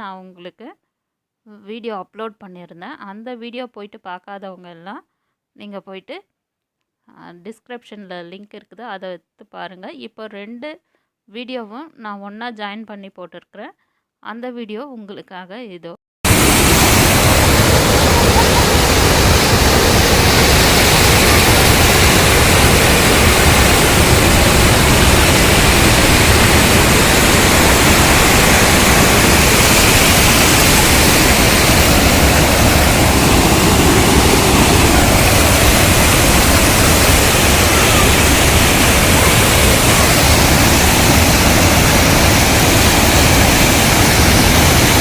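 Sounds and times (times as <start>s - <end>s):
water pouring from dam: 16.3s - 45.0s.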